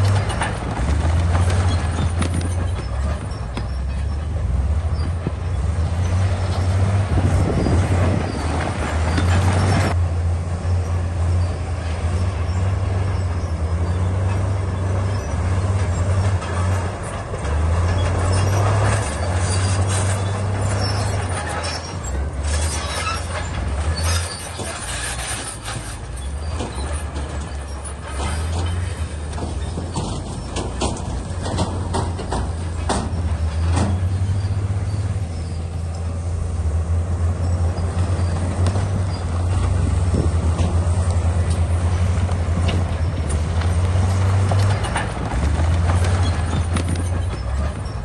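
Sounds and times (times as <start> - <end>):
bulldozer diesel engine under load: 0.0 - 48.0
steel tracks clanking: 0.0 - 48.0.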